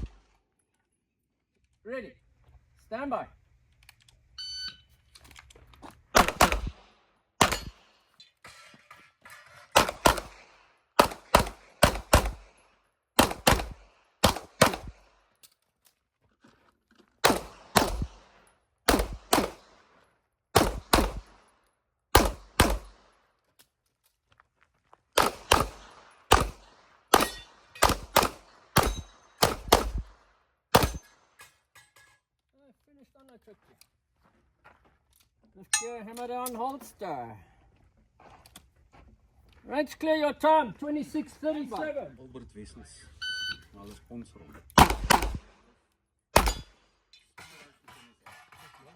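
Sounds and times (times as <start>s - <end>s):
handgun shots: 6.2s - 6.8s, 7.4s - 7.8s, 9.8s - 12.6s, 13.2s - 15.0s, 17.2s - 18.2s, 18.9s - 19.7s, 20.6s - 21.4s, 22.1s - 23.0s, 25.2s - 31.2s, 44.8s - 45.6s, 46.4s - 46.7s.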